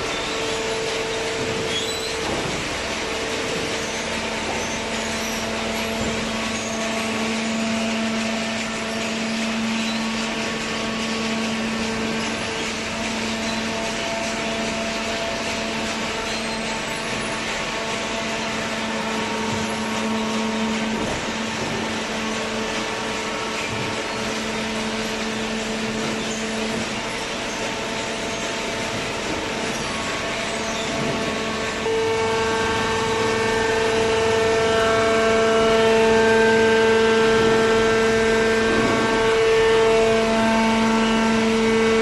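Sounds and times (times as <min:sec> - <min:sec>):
hydraulic baler motor humming: 0:00.0 - 0:42.0.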